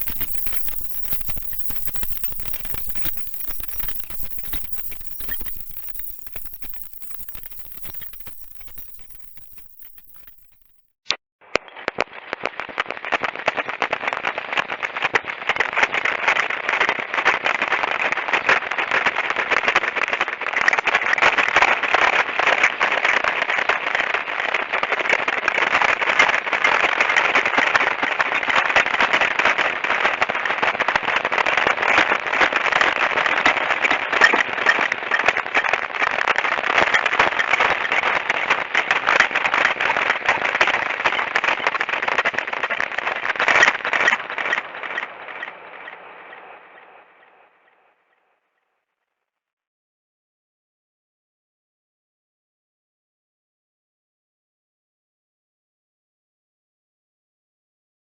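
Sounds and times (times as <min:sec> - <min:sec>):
dense crackle of small clicks: 0:00.0 - 0:10.8.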